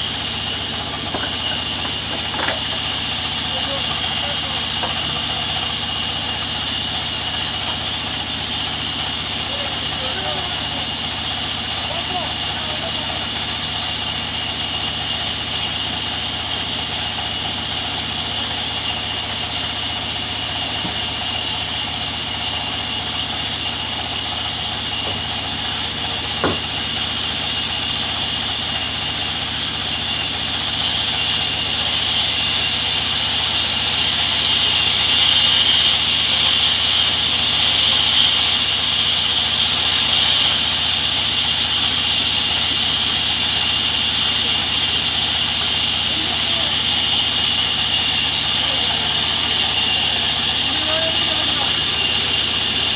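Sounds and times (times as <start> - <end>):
saw cutting through log hiss: 0.0 - 52.9
sawmill saw whining: 0.0 - 52.9.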